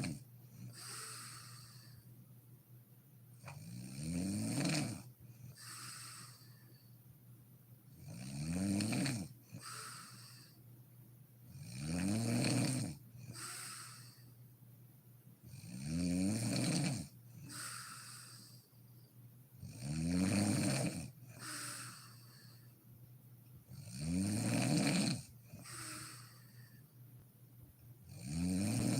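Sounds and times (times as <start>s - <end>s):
woman snoring: 0.0s - 2.0s, 3.5s - 6.7s, 8.0s - 10.6s, 11.5s - 14.3s, 15.5s - 18.6s, 19.6s - 22.7s, 23.7s - 26.8s, 28.1s - 28.9s
breathy exhale: 0.7s - 2.1s, 5.5s - 7.0s, 9.6s - 10.6s, 13.3s - 14.4s, 17.4s - 18.8s, 21.3s - 22.8s, 25.6s - 26.9s.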